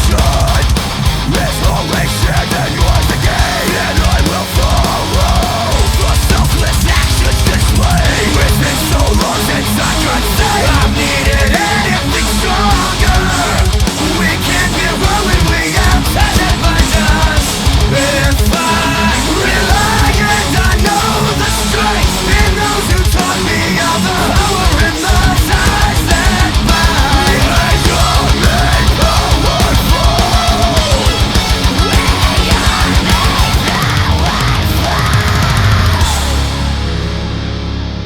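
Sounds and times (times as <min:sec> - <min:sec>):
heavy rock music: 0:00.0 - 0:38.0.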